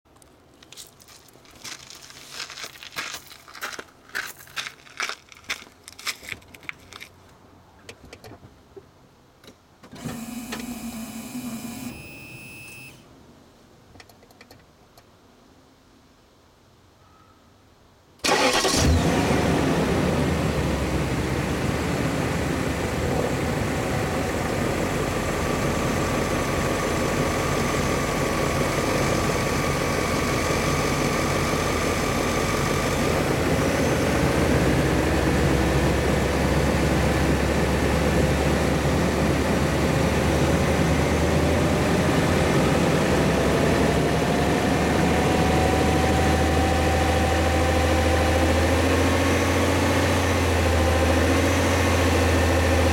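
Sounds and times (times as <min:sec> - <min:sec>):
car engine idling: 0:18.3 - 0:45.1.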